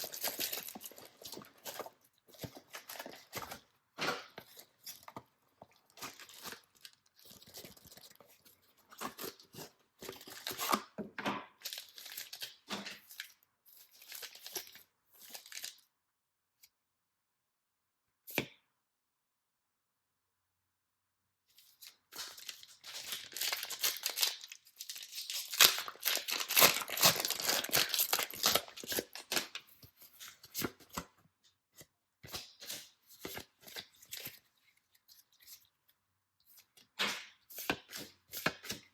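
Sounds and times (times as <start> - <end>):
packaging tearing and crinkling: 0.0 - 3.6, 22.1 - 29.7.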